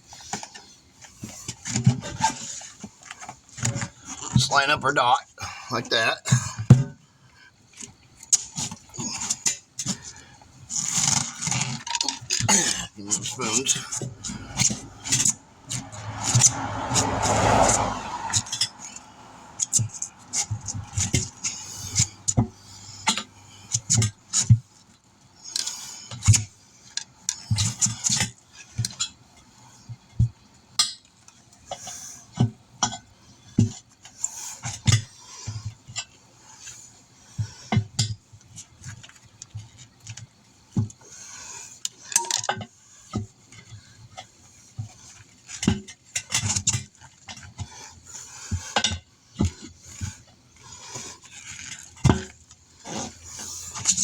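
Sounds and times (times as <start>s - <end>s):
tire spoons clanking on wheel rim: 0.1s - 5.6s, 7.8s - 24.7s, 42.0s - 54.0s.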